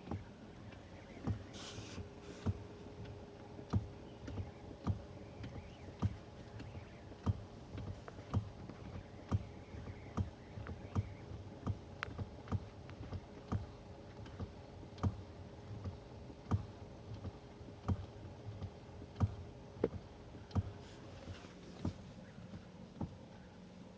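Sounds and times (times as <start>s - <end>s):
steady low hum: 0.0s - 23.9s.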